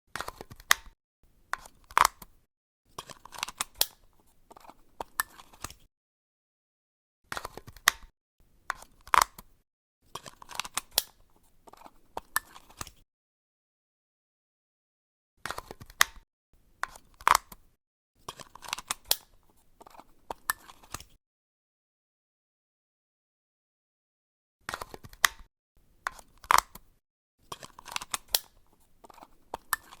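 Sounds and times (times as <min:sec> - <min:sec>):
battery cover clicks and snaps: 0:00.2 - 0:00.9, 0:01.6 - 0:02.3, 0:03.0 - 0:04.0, 0:07.3 - 0:08.1, 0:08.7 - 0:09.5, 0:10.2 - 0:11.2, 0:15.5 - 0:16.2, 0:16.8 - 0:17.6, 0:18.3 - 0:19.4, 0:24.7 - 0:25.5, 0:26.1 - 0:26.8, 0:27.6 - 0:28.6.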